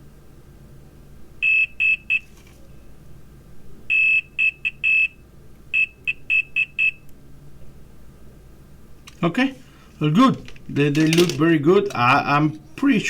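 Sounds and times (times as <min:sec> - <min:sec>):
multimeter continuity beeps: 0:01.4 - 0:02.3, 0:03.9 - 0:07.1.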